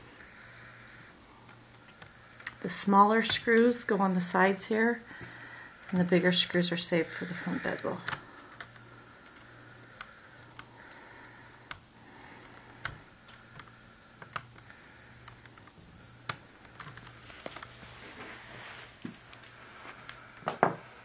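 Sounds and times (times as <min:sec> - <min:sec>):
small screwdriver clicking and tapping: 0:12.8 - 0:17.1.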